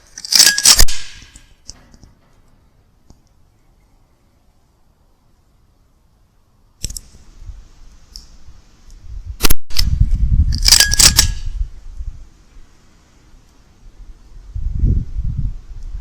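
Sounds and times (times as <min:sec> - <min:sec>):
rifle handling noise: 0:00.0 - 0:03.2, 0:10.5 - 0:11.6
metallic clicks: 0:00.1 - 0:03.4, 0:10.5 - 0:11.6
air rifle shot: 0:00.6 - 0:01.4.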